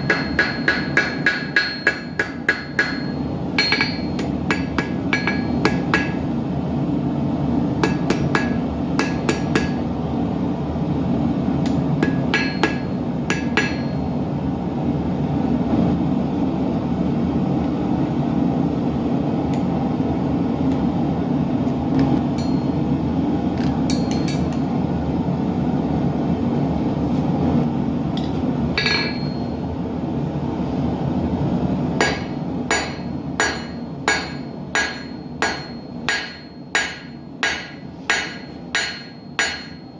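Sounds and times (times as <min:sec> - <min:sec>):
hammer striking steel on anvil: 0:00.0 - 0:06.4, 0:07.8 - 0:09.9, 0:11.6 - 0:14.1, 0:22.0 - 0:22.9, 0:23.8 - 0:24.7, 0:28.2 - 0:29.6, 0:32.0 - 0:39.9.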